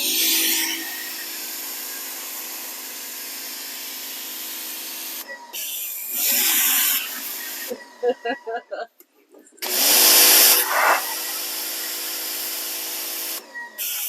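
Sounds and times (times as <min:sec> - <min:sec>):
pressure washer spraying: 0:09.6 - 0:14.0.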